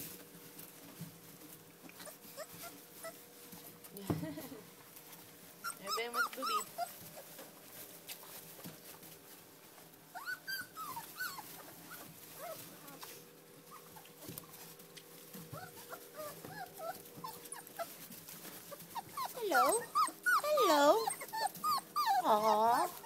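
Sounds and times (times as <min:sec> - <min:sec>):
puppies squeaking and whimpering: 0:02.0 - 0:03.2, 0:05.6 - 0:07.4, 0:10.1 - 0:14.4, 0:15.5 - 0:23.0.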